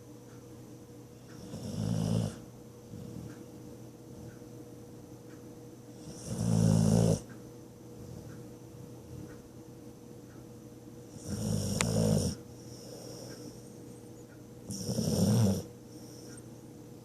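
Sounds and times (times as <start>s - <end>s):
dog snoring: 1.2s - 3.4s, 5.9s - 7.3s, 11.1s - 13.6s, 14.6s - 16.4s
dog breathing: 1.3s - 3.5s, 11.1s - 13.8s, 14.7s - 16.5s.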